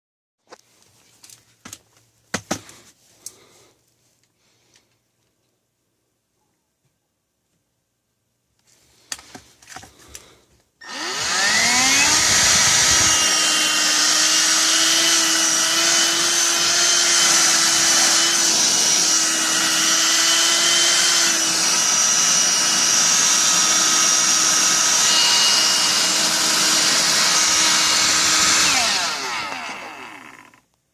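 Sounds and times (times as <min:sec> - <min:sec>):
stick vacuum motor whining: 0:10.8 - 0:30.7.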